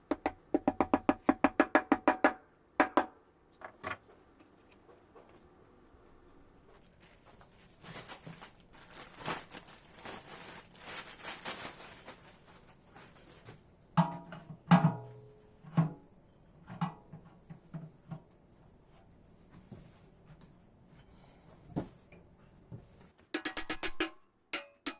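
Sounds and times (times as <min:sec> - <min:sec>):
scraping and rustling of metal parts: 0:06.7 - 0:13.7
sharp metallic clanks: 0:23.4 - 0:24.9.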